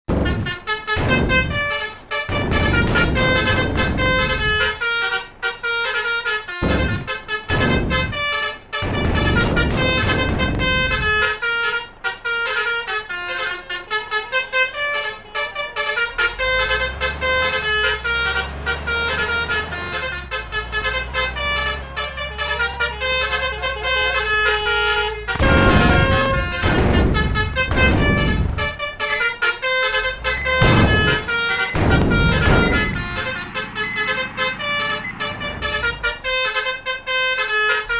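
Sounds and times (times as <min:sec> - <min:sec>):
electric horns playing a tune: 0:17.8 - 0:37.9
loud rushing bursts: 0:30.0 - 0:36.6.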